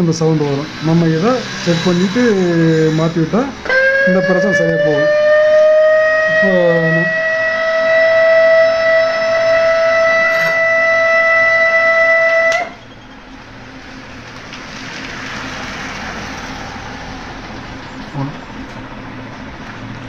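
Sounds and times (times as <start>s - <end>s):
speaker whistling tone: 0.3s - 13.4s.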